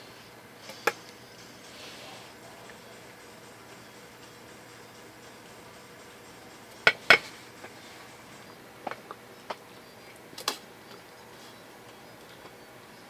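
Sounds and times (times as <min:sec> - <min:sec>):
tableware clinking: 0:06.8 - 0:07.7.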